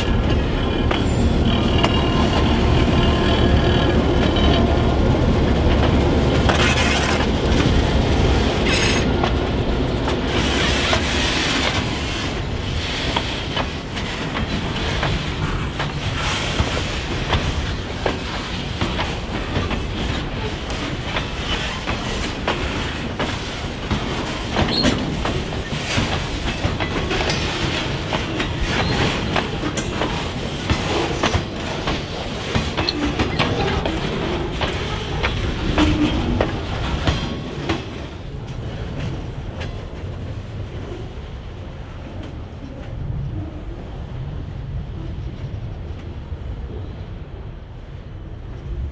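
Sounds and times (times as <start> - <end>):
train wheels clattering over rail joints: 0.0 - 40.4
train wheel squeals: 0.2 - 4.8, 8.6 - 9.2, 24.3 - 31.3, 32.5 - 36.5.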